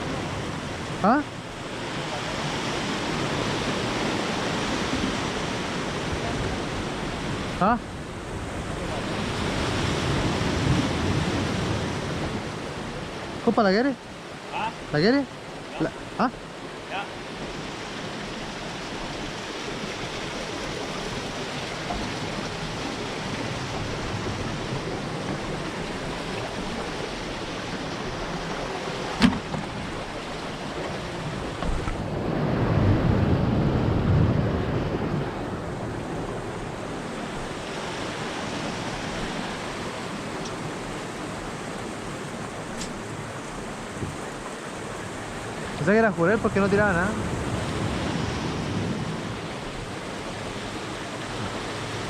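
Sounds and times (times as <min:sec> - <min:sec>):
sea waves washing: 0:00.0 - 0:52.0
wind noise on microphone: 0:30.8 - 0:41.9, 0:43.6 - 0:44.4, 0:46.4 - 0:52.0
sharp click: 0:42.8 - 0:43.0.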